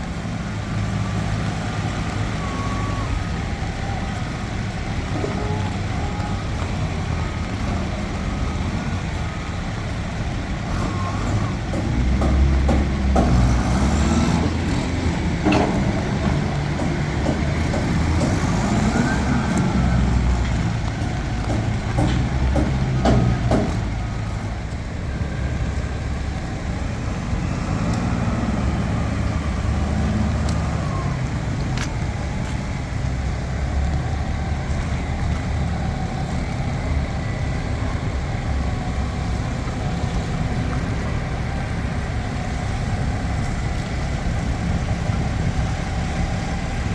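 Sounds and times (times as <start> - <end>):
heavy diesel engine running: 0.0 - 46.9
sharp metallic knocks: 11.7 - 13.8, 21.0 - 24.0.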